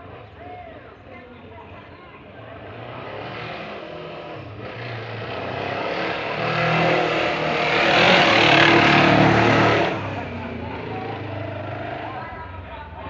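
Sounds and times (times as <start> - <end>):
motorcycle engine revving: 0.0 - 13.0.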